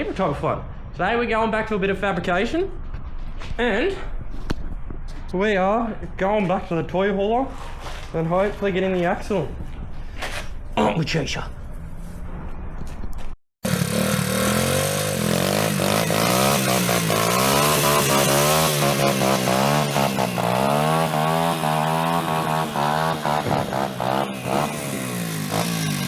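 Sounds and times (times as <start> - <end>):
small motorbike engine revving: 13.6 - 26.0.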